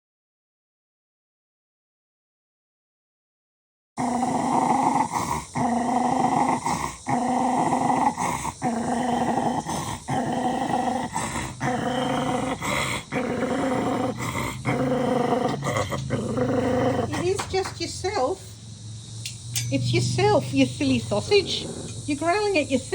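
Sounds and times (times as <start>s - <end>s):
puppy growling: 4.0s - 18.6s, 19.6s - 22.9s.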